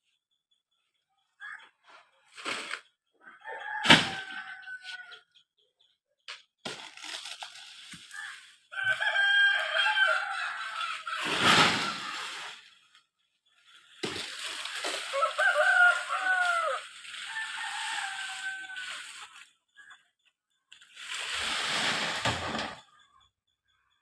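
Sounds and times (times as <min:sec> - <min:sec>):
rooster crowing: 0:03.2 - 0:05.3, 0:08.7 - 0:12.3, 0:14.9 - 0:19.4.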